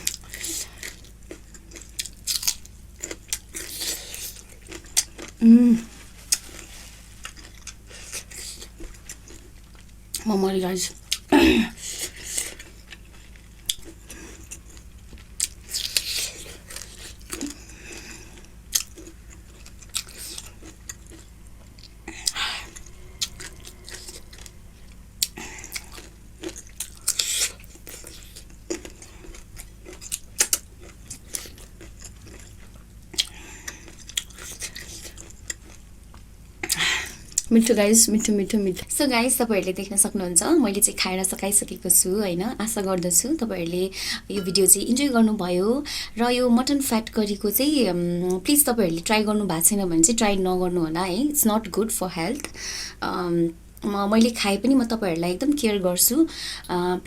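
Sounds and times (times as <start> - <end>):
chewing and biting food: 0.0 - 5.4, 6.0 - 37.5.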